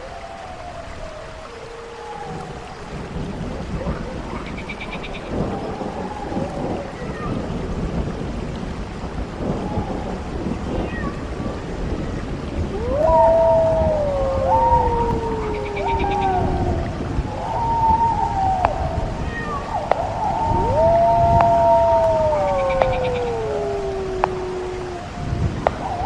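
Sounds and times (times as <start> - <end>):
low moaning glides: 0.0 - 7.0, 12.5 - 26.0
rumbling thunder and rain noise: 0.0 - 26.0
loud wailing tone: 12.7 - 26.0.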